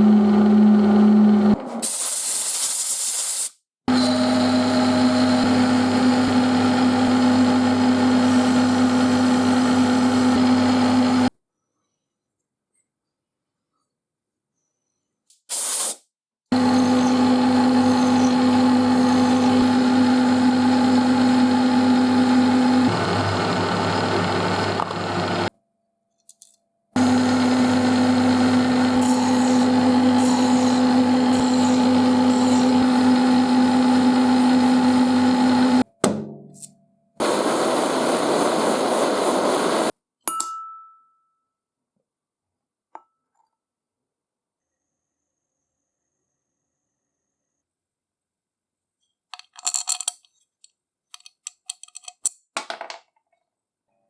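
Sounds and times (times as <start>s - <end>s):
electric machine tool humming: 3.9s - 11.3s, 16.6s - 25.5s, 27.0s - 35.8s.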